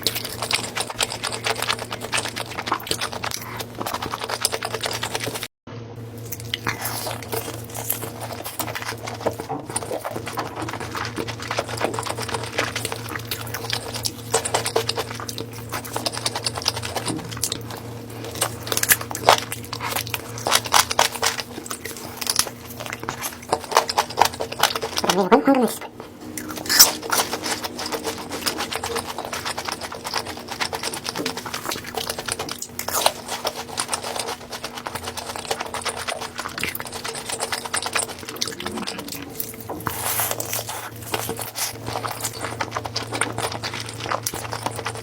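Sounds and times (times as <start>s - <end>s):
crunching food: 0.0s - 5.5s, 6.2s - 45.0s
wet chewing clicks: 0.0s - 5.5s, 6.2s - 45.0s
steady low hum: 0.0s - 45.0s.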